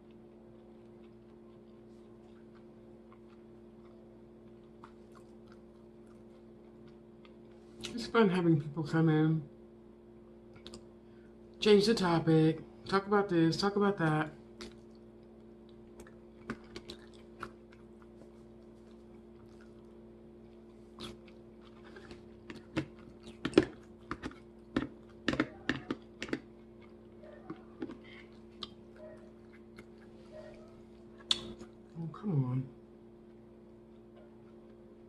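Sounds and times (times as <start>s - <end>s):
person chewing salad: 0.0s - 8.0s, 10.5s - 10.9s, 14.6s - 32.0s, 33.2s - 35.0s
faint hum: 0.0s - 35.0s.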